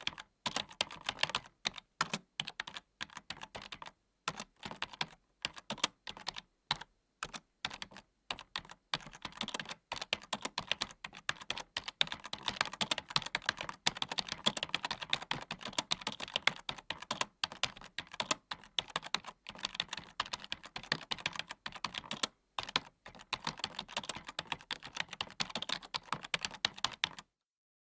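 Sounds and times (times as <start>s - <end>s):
typing on computer keyboard: 0.0s - 27.3s.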